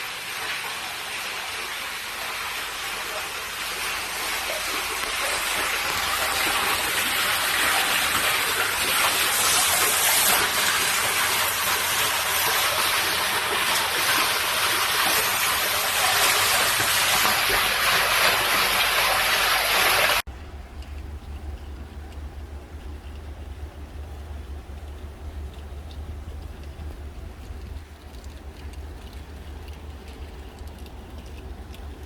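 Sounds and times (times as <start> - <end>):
heavy rain downpour: 0.0 - 20.2.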